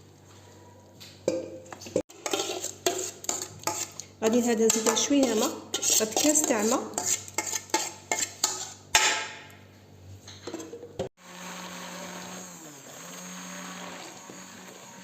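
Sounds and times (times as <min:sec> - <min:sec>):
electric blender running: 0:11.2 - 0:15.0.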